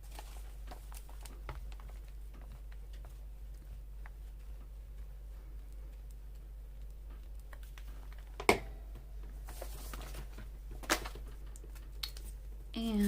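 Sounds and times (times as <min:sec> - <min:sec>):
paper rustling: 0:00.0 - 0:05.0, 0:09.3 - 0:12.4.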